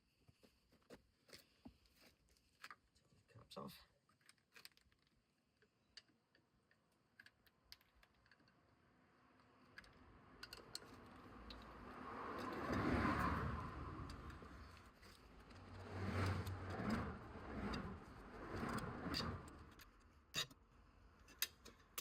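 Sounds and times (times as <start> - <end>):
light clicks of small parts: 4.0 - 13.3
vehicle passing by: 9.0 - 20.2.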